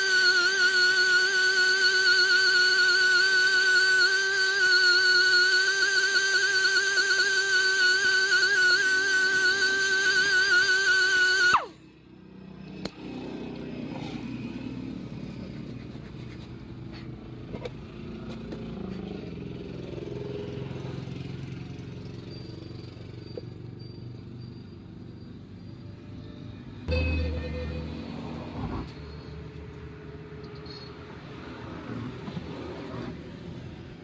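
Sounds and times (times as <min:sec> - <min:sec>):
low mechanical hum: 0:00.0 - 0:13.0
tonal sound falling in pitch: 0:26.9 - 0:28.5.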